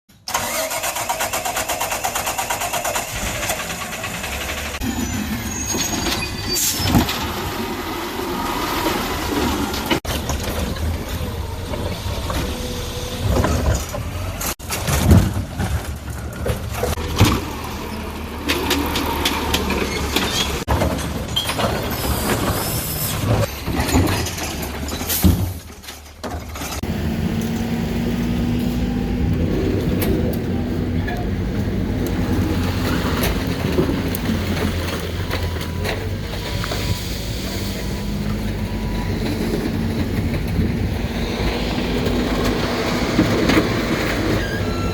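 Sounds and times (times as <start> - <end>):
diesel truck engine under load: 0.1 - 44.9
clanks and bangs of waste: 13.2 - 17.7, 18.5 - 26.8.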